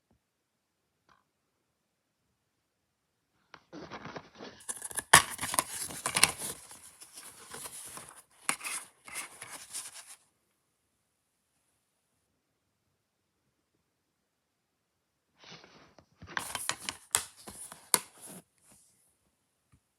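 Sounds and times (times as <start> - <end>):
plastic case scraping and rustling: 4.6 - 10.2, 16.4 - 18.4.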